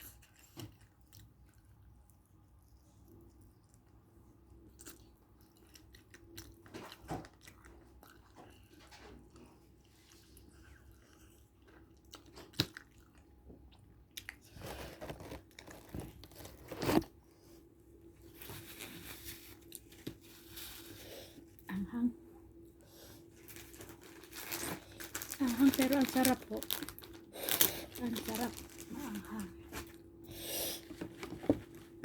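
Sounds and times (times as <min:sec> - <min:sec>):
chewing and biting food: 0:00.0 - 0:16.6.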